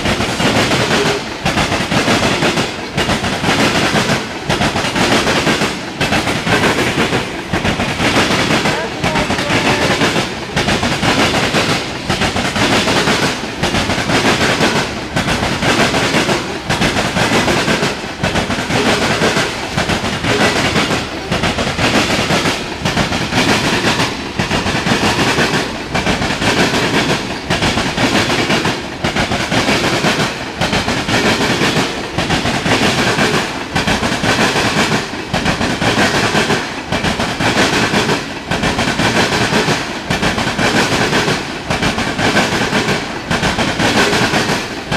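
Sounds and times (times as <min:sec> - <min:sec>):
freight train rolling past: 0:00.0 - 0:44.9
wheels clacking over rail joints: 0:00.0 - 0:44.9.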